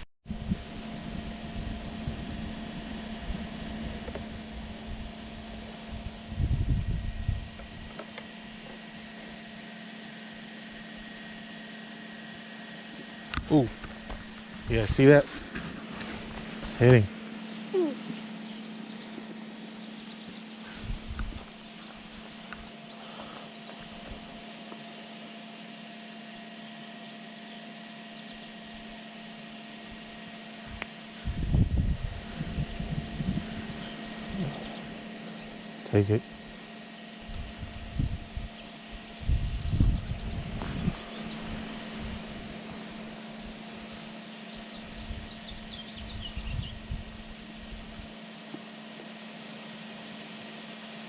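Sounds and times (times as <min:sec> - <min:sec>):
steady machine hum: 0:00.3 - 0:51.0
outdoor background hiss: 0:00.7 - 0:51.0
faint high bird chirps: 0:12.8 - 0:13.6, 0:16.2 - 0:23.9, 0:44.5 - 0:46.9.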